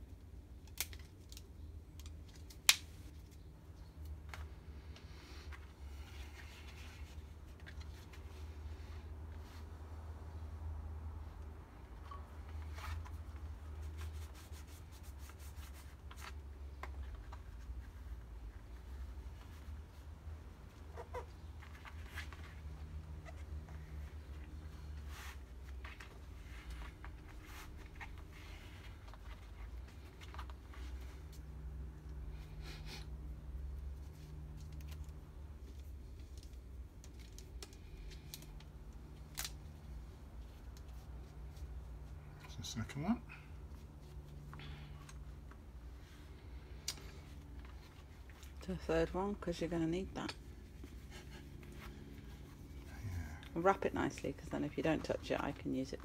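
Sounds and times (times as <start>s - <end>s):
rubbing and scraping handling: 11.9s - 31.6s.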